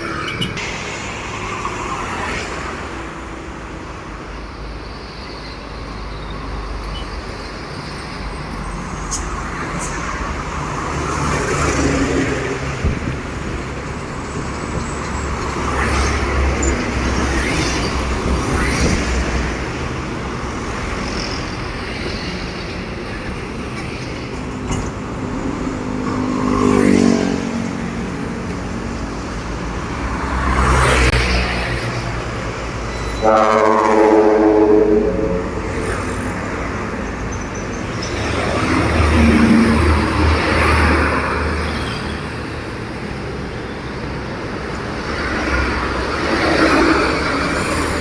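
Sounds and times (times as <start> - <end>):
heavy trucks passing: 0.0 - 48.0.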